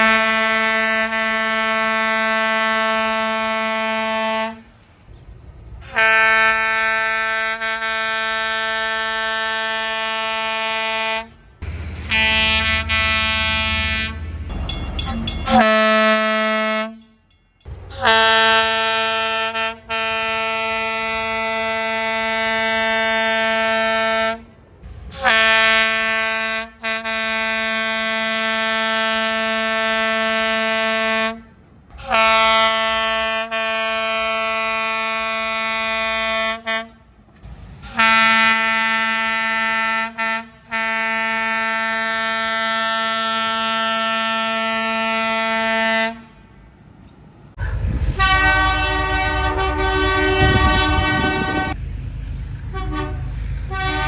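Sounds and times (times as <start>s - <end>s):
train whistle blasts: 0.0s - 4.7s, 5.8s - 17.2s, 17.9s - 24.5s, 25.1s - 37.0s, 37.8s - 46.4s, 48.1s - 51.8s, 52.7s - 54.0s
rough multi-tone train horn: 0.0s - 4.9s, 5.8s - 46.7s, 47.7s - 51.8s, 52.7s - 54.0s
low rumble: 11.6s - 15.6s.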